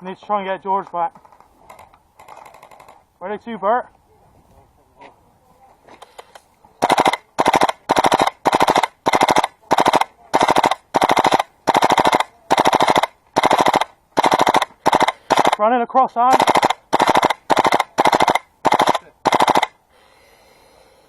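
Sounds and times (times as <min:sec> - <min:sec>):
airsoft gun firing bursts: 0:06.8 - 0:15.6, 0:16.3 - 0:19.8.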